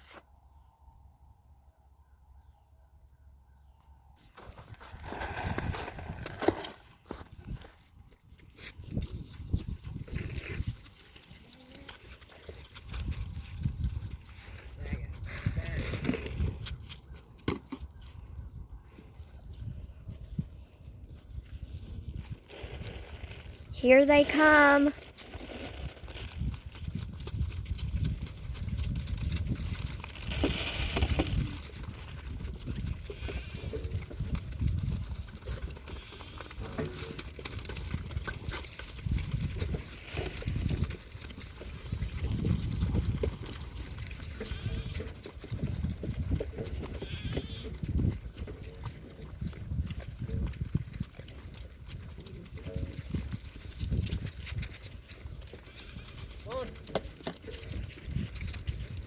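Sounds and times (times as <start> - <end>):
goats bleating: 44.4 - 45.1, 47.0 - 47.8.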